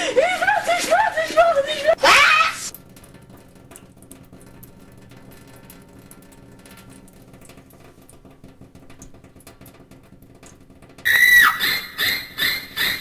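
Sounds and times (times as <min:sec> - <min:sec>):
light clicks and taps: 0:03.0 - 0:11.0.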